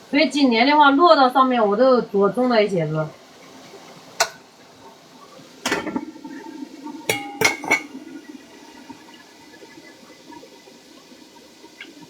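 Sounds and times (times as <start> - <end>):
dishes clinking: 4.2 - 4.4, 5.6 - 6.1, 7.1 - 8.1.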